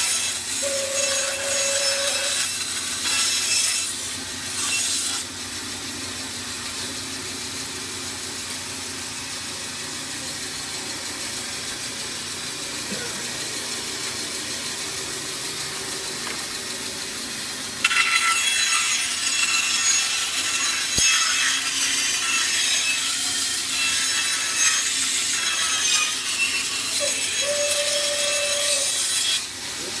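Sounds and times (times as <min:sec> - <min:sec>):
bandsaw cutting wood: 0:00.0 - 0:05.4, 0:17.8 - 0:30.0
bandsaw running: 0:00.0 - 0:30.0.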